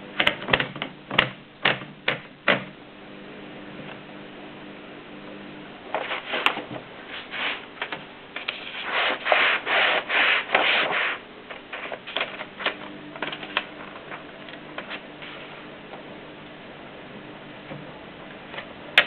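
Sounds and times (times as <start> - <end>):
rubbing sliding noise: 6.0 - 7.7, 8.4 - 12.2.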